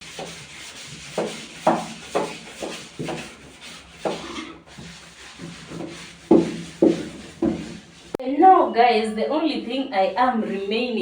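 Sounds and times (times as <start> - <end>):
objects knocking and rubbing: 0.0 - 8.2.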